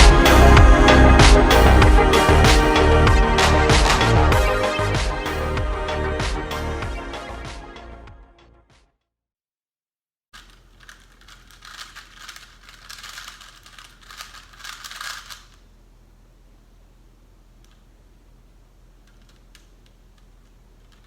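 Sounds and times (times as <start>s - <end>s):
puzzle cube plastic clicks: 10.4s - 15.6s, 19.0s - 21.0s
steady low hum: 10.4s - 21.0s.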